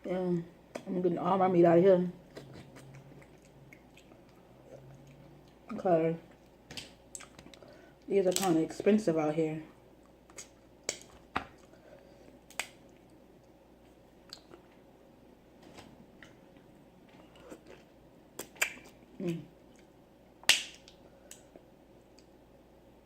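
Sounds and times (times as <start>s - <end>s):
mouth smacks: 18.4s - 19.8s.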